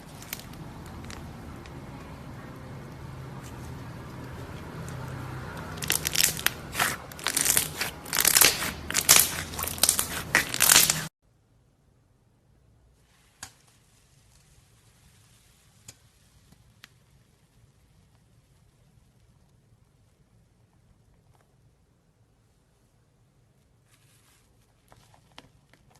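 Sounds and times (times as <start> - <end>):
slime crackling and popping: 4.2 - 11.1.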